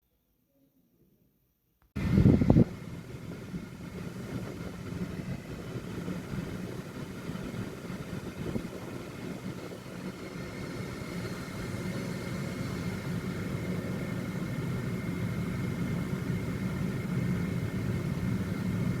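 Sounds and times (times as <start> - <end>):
thin steady whine: 2.0 - 19.0.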